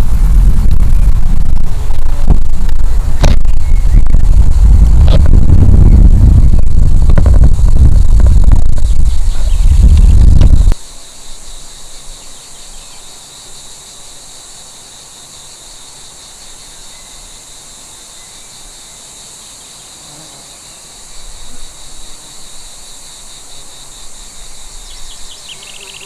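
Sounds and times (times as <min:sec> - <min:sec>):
wind rumble: 0:00.0 - 0:10.8
grasshoppers chirring: 0:00.0 - 0:26.0
faint bird chirps: 0:10.8 - 0:14.1, 0:24.0 - 0:26.0.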